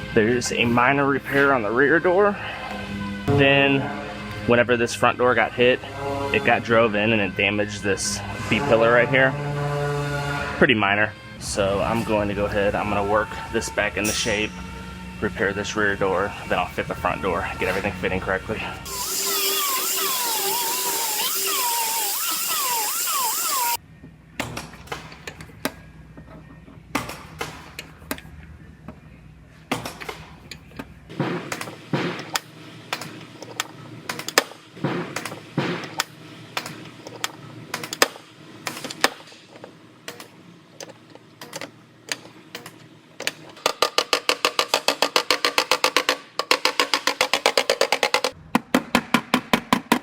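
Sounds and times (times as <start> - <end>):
power tool whining: 18.8 - 23.8
knocks and clicks on metal: 42.6 - 50.0.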